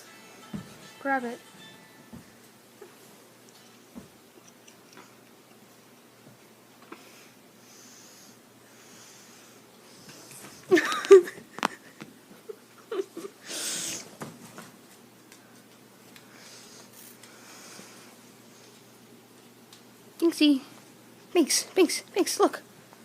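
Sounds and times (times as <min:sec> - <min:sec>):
cat hissing: 0:13.4 - 0:14.1.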